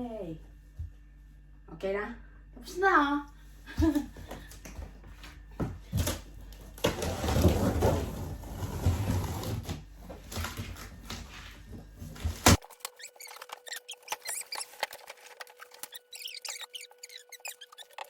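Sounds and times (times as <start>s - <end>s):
plastic packaging rustling: 6.0s - 18.0s.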